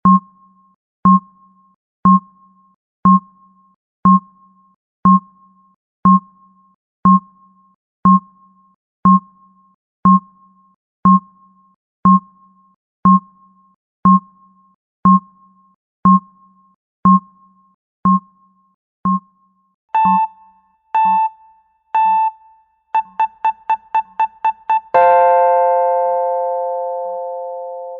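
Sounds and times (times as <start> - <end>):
timer beeps: 2.1 - 2.3, 3.1 - 3.3, 5.1 - 5.3, 7.1 - 7.3, 8.1 - 8.3, 10.1 - 10.3, 18.1 - 18.3, 19.1 - 19.3, 20.0 - 25.2
clock ticking: 20.0 - 22.4, 23.0 - 25.0.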